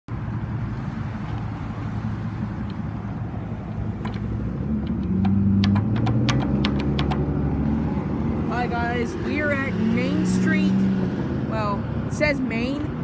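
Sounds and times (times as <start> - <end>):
car engines running: 0.1 - 13.0
sharp clicks: 4.0 - 7.3.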